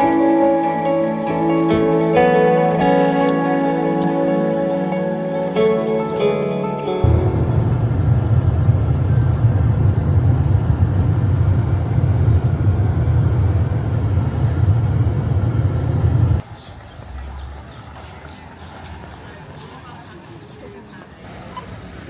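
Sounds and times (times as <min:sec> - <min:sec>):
car road rumble: 0:07.0 - 0:16.4.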